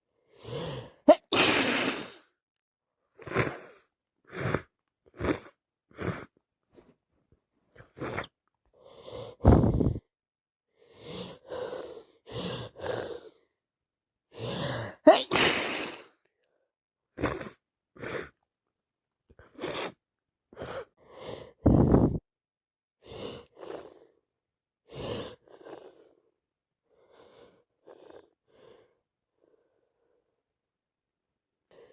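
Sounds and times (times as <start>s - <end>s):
woman sneezing: 1.1s - 2.2s, 15.0s - 16.0s.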